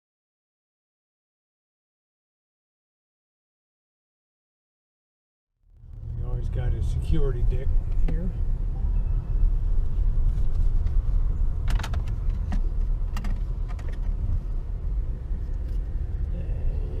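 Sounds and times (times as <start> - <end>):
car cabin low rumble: 5.7 - 17.0.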